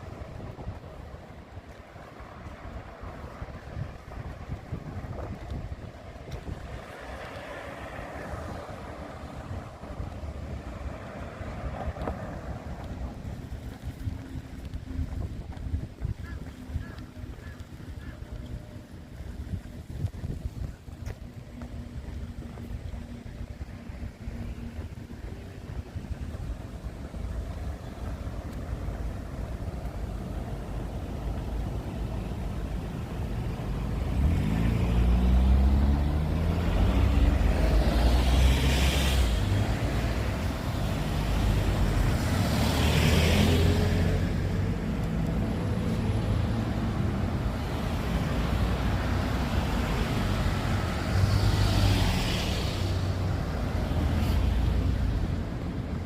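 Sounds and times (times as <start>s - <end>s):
tyre hiss on wet road: 47.6s - 55.3s.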